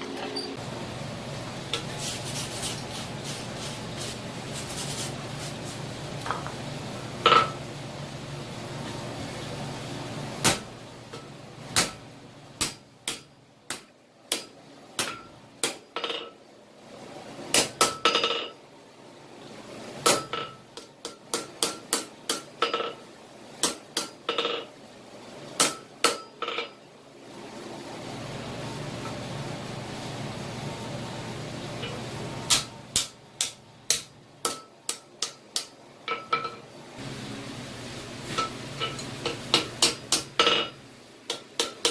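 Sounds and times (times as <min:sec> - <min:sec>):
hammer striking steel on anvil: 0:12.6 - 0:16.3, 0:20.1 - 0:22.9, 0:25.6 - 0:26.8, 0:31.8 - 0:36.6, 0:38.4 - 0:41.9.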